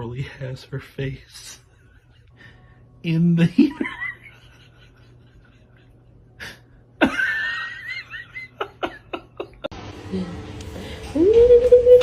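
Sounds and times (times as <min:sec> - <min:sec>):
person laughing: 0:03.6 - 0:09.7.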